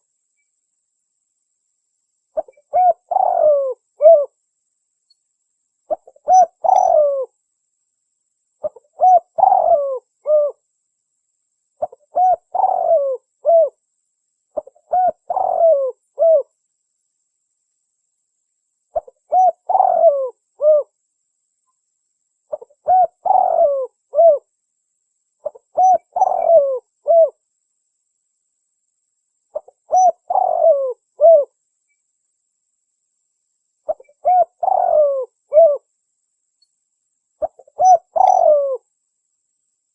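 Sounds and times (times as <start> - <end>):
dove cooing: 2.4 - 4.3, 5.9 - 7.3, 8.6 - 10.6, 11.8 - 13.8, 14.6 - 16.5, 19.0 - 20.9, 22.5 - 24.5, 25.4 - 27.4, 29.6 - 31.6, 33.9 - 35.9, 37.4 - 38.8.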